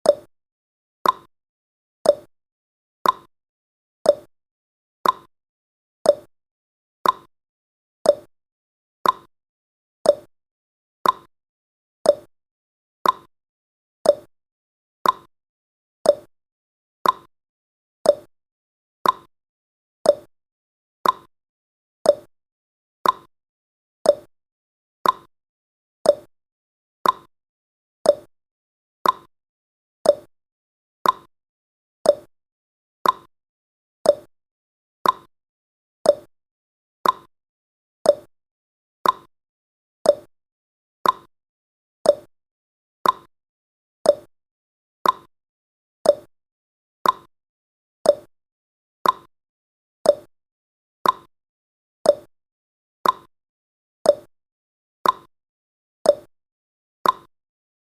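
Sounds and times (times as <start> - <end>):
clock ticking: 35.0 - 35.3, 37.0 - 37.3, 41.0 - 41.3, 43.0 - 43.3, 47.0 - 47.3, 49.0 - 49.3, 57.0 - 57.3.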